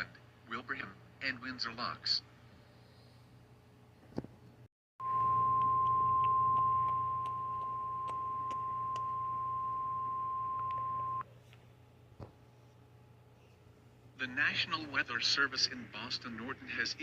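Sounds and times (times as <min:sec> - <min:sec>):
steady alarm tone: 0:05.0 - 0:11.2
low hum: 0:05.0 - 0:11.3.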